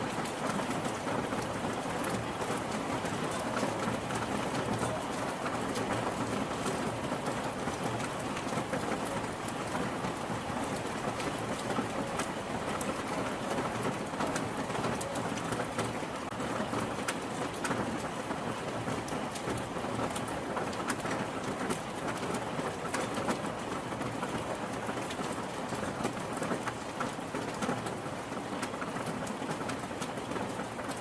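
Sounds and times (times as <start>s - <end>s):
raindrops ticking on a surface: 0.0s - 31.0s
steady rain hiss: 0.0s - 31.0s.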